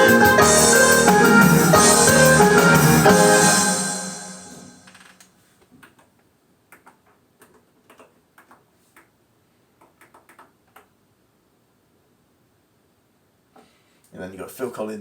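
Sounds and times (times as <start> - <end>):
keyboard and piano music: 0.0 - 5.0.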